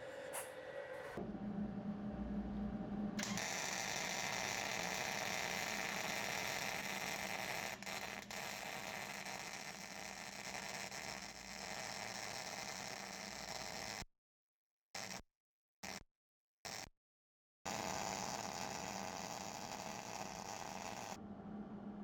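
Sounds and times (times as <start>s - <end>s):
welding arc buzzing and crackling: 3.2s - 14.0s, 15.0s - 15.2s, 16.7s - 16.9s, 17.7s - 21.2s.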